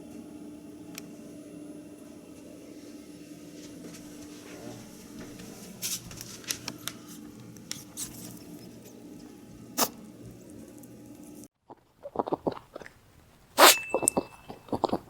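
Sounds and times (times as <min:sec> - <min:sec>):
steady low hum: 0:00.0 - 0:11.5.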